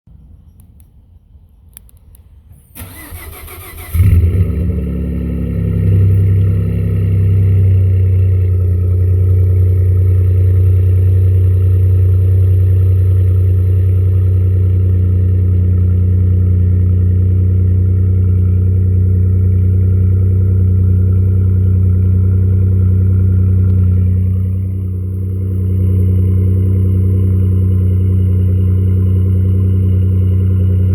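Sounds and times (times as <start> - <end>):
starter motor cranking: 2.8 - 4.2.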